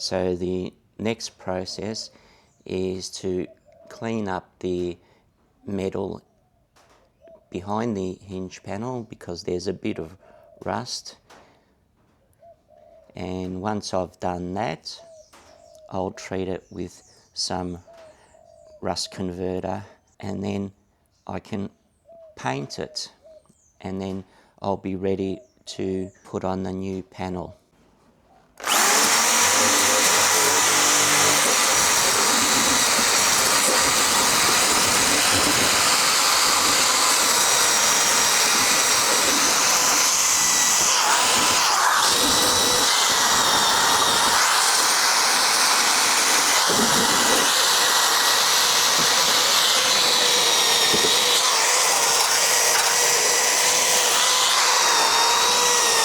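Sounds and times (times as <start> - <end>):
rotary power tool on steel: 28.6 - 56.0.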